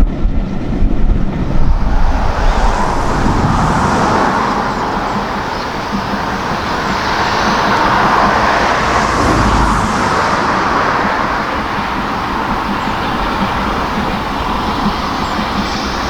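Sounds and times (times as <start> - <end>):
vehicle passing by: 0.9 - 13.6.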